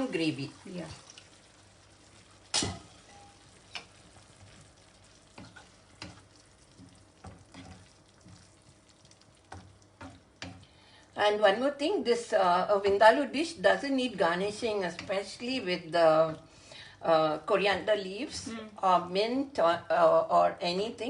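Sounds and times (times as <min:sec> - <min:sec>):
faint sizzling: 0:00.0 - 0:21.0
spoon scraping a pan: 0:05.3 - 0:08.5.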